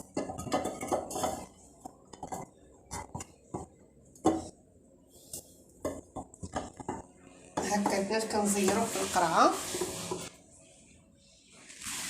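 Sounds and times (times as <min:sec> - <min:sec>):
utensils and dishes clinking: 0:00.0 - 0:03.4.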